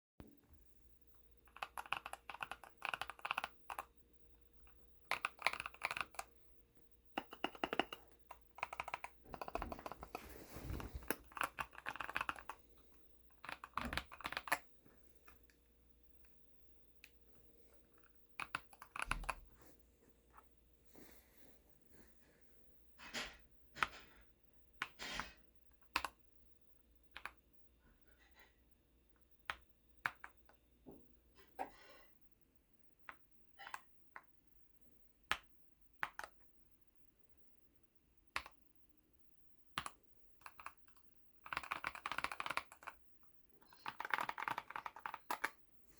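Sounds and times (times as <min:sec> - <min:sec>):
mechanical keyboard key presses: 0:01.4 - 0:03.9, 0:05.0 - 0:06.3, 0:07.1 - 0:10.2, 0:10.9 - 0:12.6, 0:13.3 - 0:14.6, 0:18.0 - 0:19.4, 0:39.8 - 0:43.0, 0:43.7 - 0:45.6.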